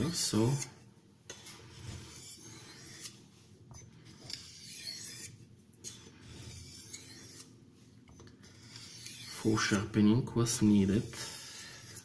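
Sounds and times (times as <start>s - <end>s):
knife blade on oilstone: 4.3s - 5.3s.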